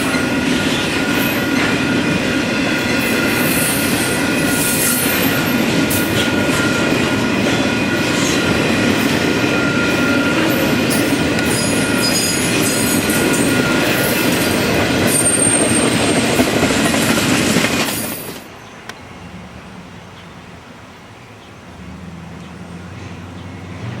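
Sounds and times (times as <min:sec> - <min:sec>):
high-pitched wheel squeal: 0:00.0 - 0:16.2
freight train wheels clacking: 0:00.0 - 0:19.1.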